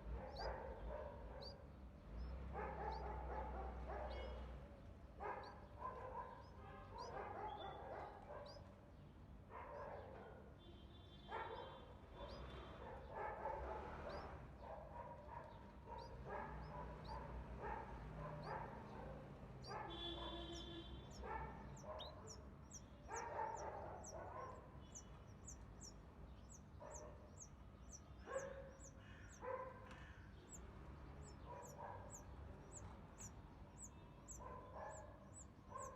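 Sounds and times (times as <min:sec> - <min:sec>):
nestlings whimpering calls: 0:00.0 - 0:04.6, 0:05.3 - 0:08.8, 0:12.1 - 0:35.9
nestlings high chirps: 0:12.3 - 0:14.5, 0:15.5 - 0:29.4, 0:30.5 - 0:35.9.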